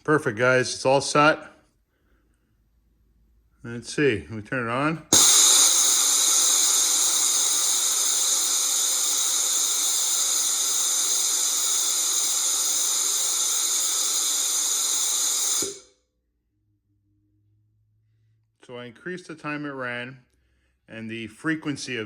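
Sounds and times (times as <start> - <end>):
compressed air hissing from valve: 5.2 - 15.9.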